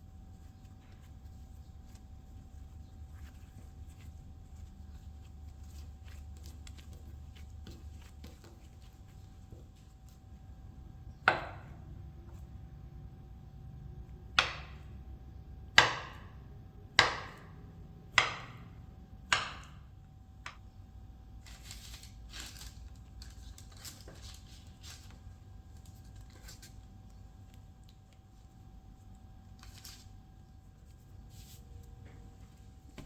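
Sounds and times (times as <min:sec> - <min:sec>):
scraping and rustling of food: 0:00.0 - 0:11.2, 0:21.3 - 0:33.0
knife chopping on wooden board: 0:11.3 - 0:11.8, 0:14.3 - 0:14.9, 0:15.8 - 0:16.4, 0:17.0 - 0:19.9.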